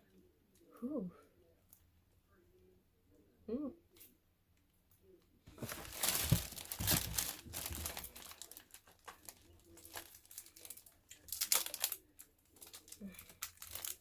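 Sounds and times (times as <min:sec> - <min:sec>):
gift wrapping crinkling and tearing: 0:05.5 - 0:14.0.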